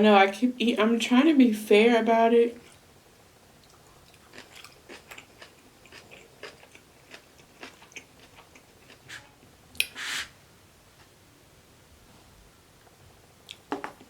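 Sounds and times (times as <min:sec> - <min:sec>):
person chewing crunchy food: 0:03.6 - 0:10.3
short hiss: 0:09.1 - 0:10.4.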